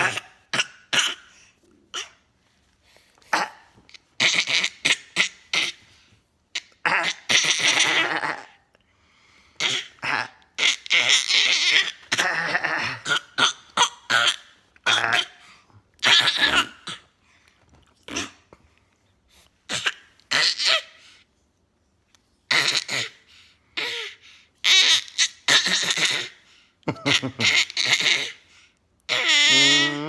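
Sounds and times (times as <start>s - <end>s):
person clearing throat: 26.9s - 28.3s.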